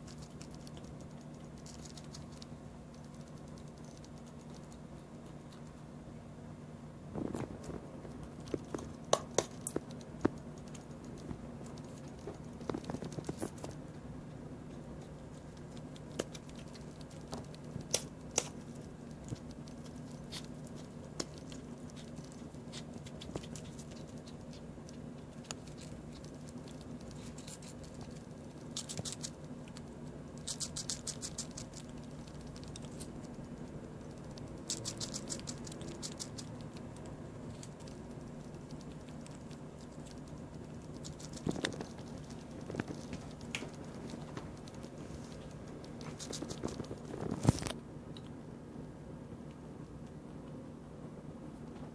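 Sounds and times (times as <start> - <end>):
squirrel gnawing food: 0.0 - 51.9.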